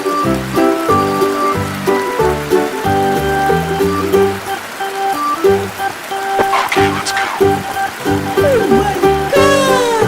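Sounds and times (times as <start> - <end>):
patter like falling water: 0.0 - 10.0
cartoon background music: 5.1 - 10.0.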